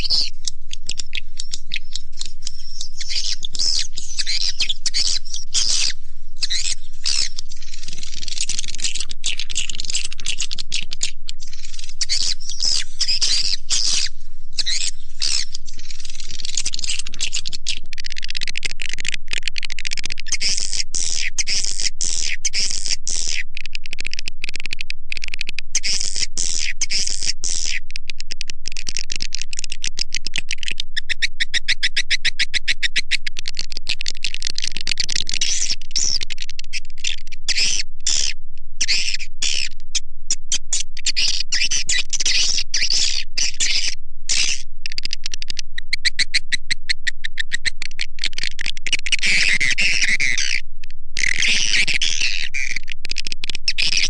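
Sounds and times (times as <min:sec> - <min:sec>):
swiftlets twittering and chirping: 0:00.0 - 0:19.0, 0:30.5 - 0:50.6, 0:51.2 - 0:54.0.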